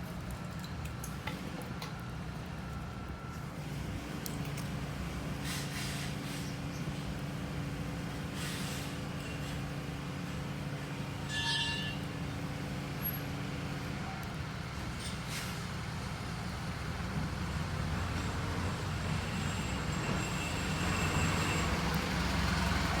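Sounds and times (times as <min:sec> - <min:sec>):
truck engine rumble: 0:00.0 - 0:23.0
high-pitched squeal: 0:19.2 - 0:22.0.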